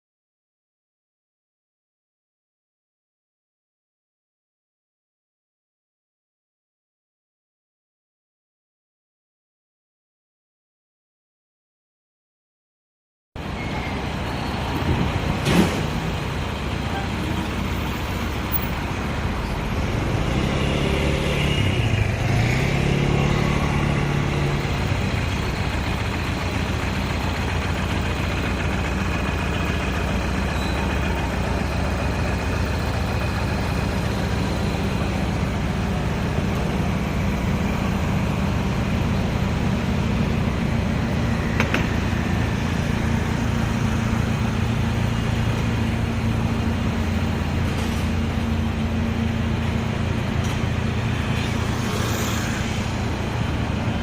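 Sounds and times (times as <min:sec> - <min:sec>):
street traffic noise: 0:13.4 - 0:54.0
vehicle passing: 0:17.8 - 0:25.5, 0:50.7 - 0:54.0.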